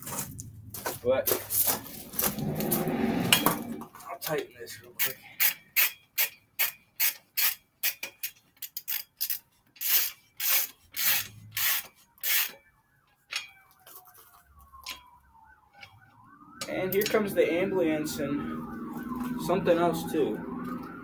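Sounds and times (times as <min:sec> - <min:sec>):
distant siren wailing: 0:00.0 - 0:04.2, 0:11.2 - 0:21.0
ratchet wrench clicking: 0:05.0 - 0:12.5.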